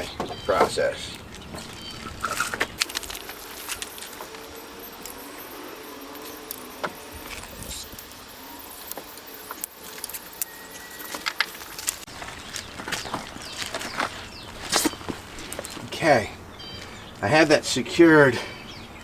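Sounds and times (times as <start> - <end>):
metal hooks and buckle clinking: 2.2 - 12.1.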